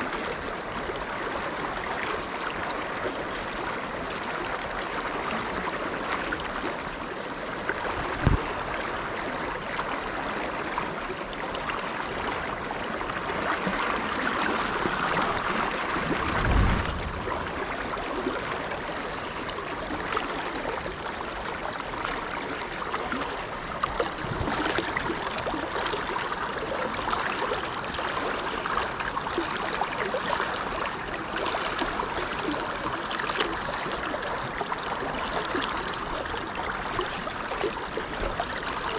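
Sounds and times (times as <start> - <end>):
stream flowing over rocks: 0.0 - 38.9
dull low thumps: 7.9 - 8.6, 14.8 - 17.7.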